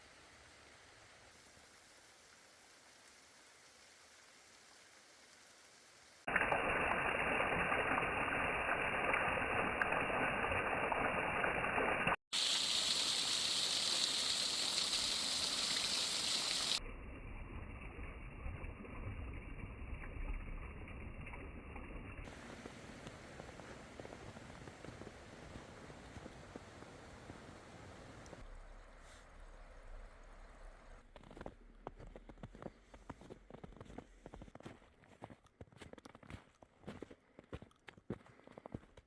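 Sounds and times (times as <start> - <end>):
waterfall rushing water: 11.3 - 16.8.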